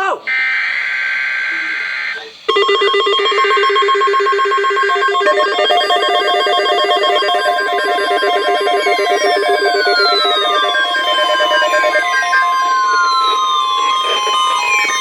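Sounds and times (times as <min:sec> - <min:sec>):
warbling alarm beeps: 0:00.3 - 0:15.0
steady alert tone: 0:02.5 - 0:15.0
falling sweeping tones: 0:04.2 - 0:15.0.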